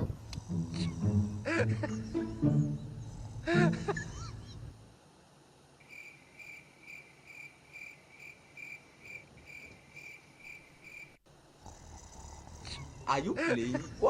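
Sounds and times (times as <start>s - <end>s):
cricket chirping: 5.8s - 11.2s.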